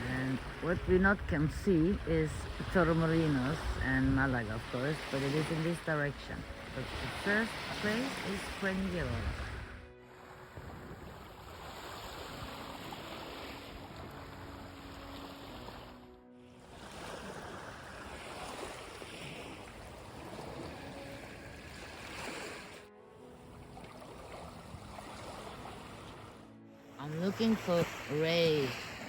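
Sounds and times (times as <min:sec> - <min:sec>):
waves washing onto beach: 0:00.0 - 0:29.0.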